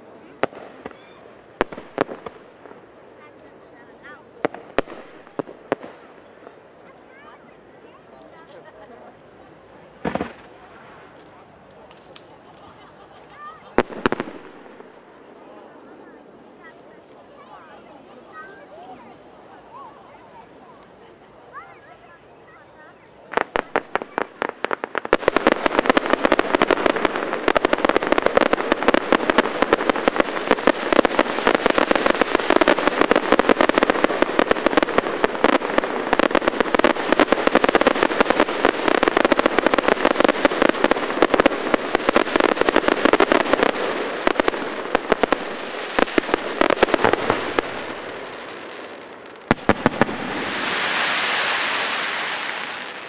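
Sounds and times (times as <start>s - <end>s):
fireworks crackling and popping: 0.0s - 53.0s
fireworks sharp bangs: 0.2s - 6.9s, 9.8s - 15.4s, 23.3s - 53.0s.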